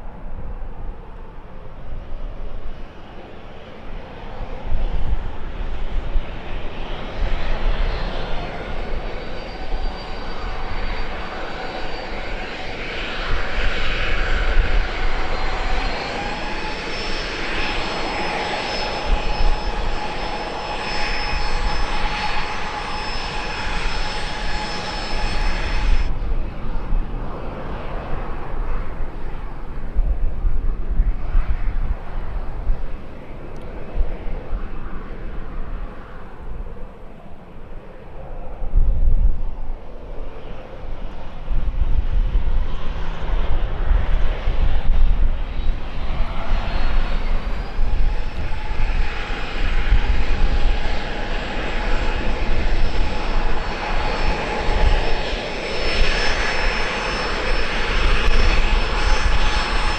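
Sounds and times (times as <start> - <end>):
airliner engines whining: 0.0 - 59.9
loud rush and low rumble: 41.0 - 59.9.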